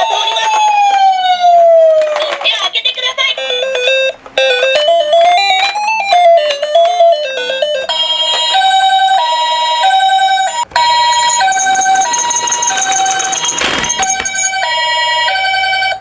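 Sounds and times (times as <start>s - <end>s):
two-tone ambulance siren: 0.0s - 2.0s, 9.1s - 16.0s.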